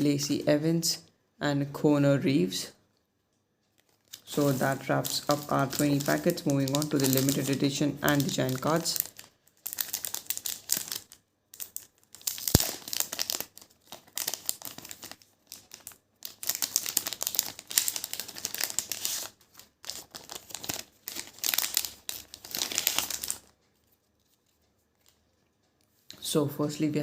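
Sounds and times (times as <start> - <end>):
plastic packaging crinkling: 3.7 - 25.2.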